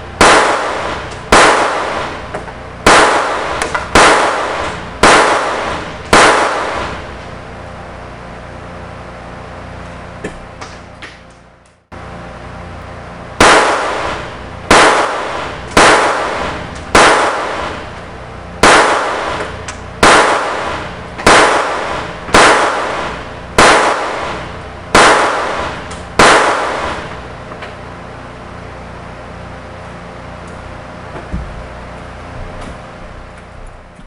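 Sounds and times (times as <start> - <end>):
pistol shots with echo: 0.2 - 7.1, 13.4 - 18.0, 18.6 - 27.2.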